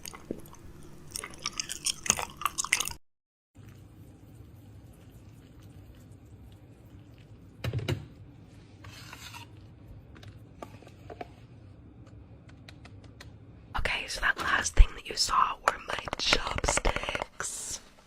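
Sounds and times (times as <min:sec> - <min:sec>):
low steady hum: 0:03.6 - 0:18.0
utensil scraping a dish: 0:08.8 - 0:09.7.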